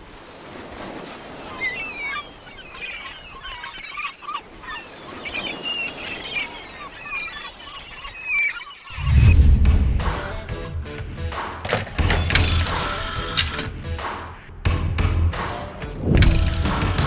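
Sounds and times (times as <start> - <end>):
birds chirping and squawking: 1.4 - 9.0.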